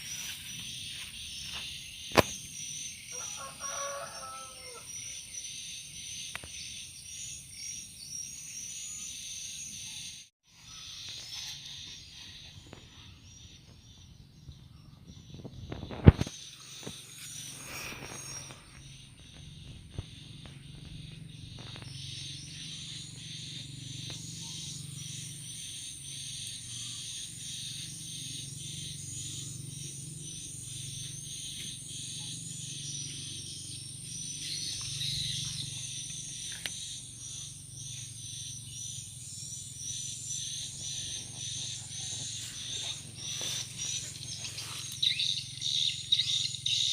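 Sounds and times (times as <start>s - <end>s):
insects chirping: 0.0s - 46.9s
steady high whine: 15.4s - 45.5s.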